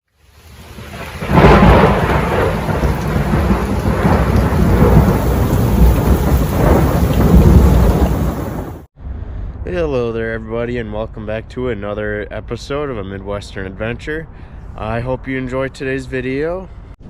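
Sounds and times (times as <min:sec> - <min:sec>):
steady rain: 0:00.1 - 0:08.9
thunder rumbling: 0:00.4 - 0:08.9.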